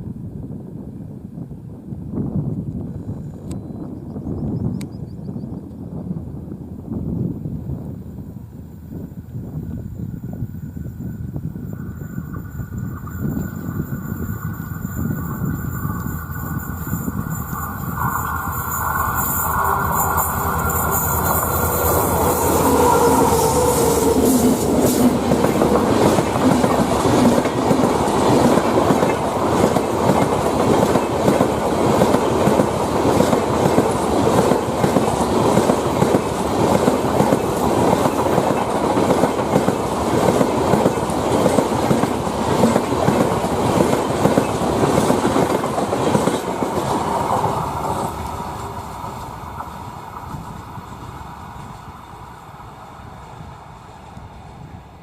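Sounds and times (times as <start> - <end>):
train wheels clattering over rail joints: 15.0 - 51.0.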